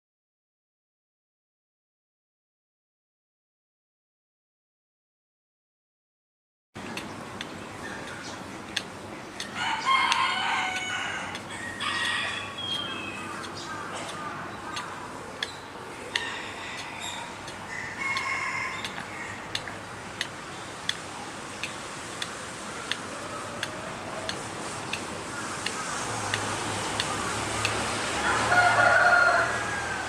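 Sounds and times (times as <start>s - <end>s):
high wavering animal calls: 7.8s - 19.7s, 22.6s - 30.0s.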